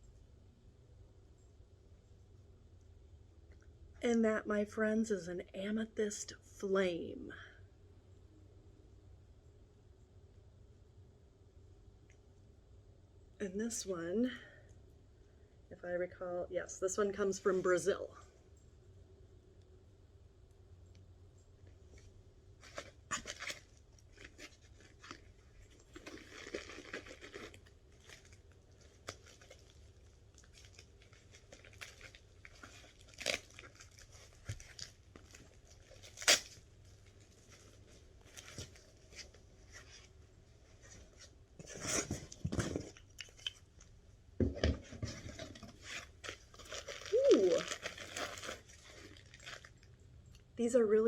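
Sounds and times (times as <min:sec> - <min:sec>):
packing material rustling and tearing: 0:21.9 - 0:43.7, 0:44.8 - 0:49.9.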